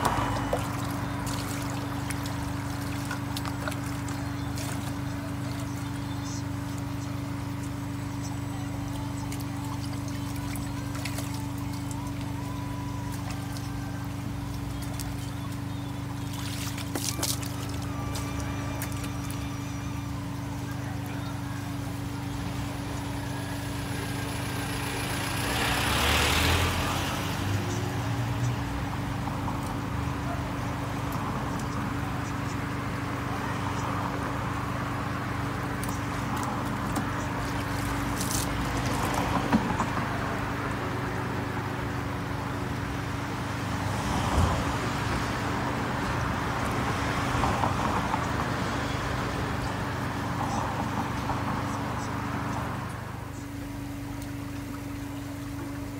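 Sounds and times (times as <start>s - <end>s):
low mechanical hum: 0.0s - 55.9s.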